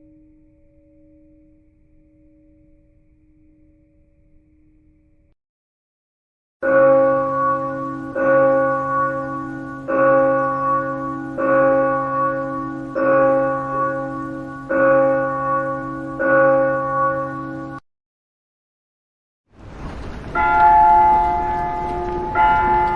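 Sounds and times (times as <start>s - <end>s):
church bell tolling: 6.6s - 17.8s, 20.2s - 22.9s.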